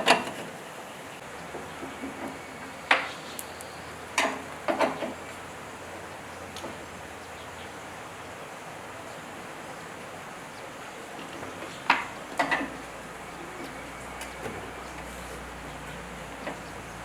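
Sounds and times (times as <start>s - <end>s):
hand tools clicking and knocking: 11.9s - 12.8s.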